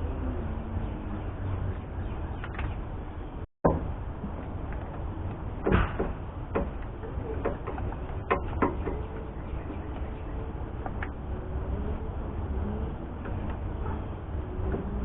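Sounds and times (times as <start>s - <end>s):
low hum: 0.0s - 15.0s.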